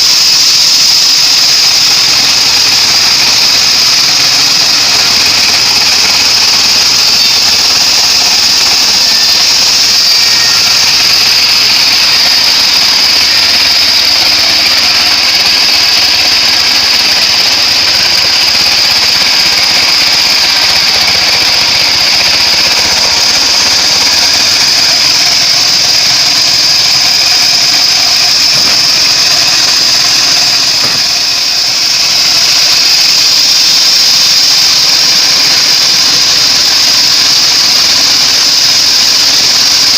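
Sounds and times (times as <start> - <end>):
bandsaw sawing wood: 0.0 - 39.9.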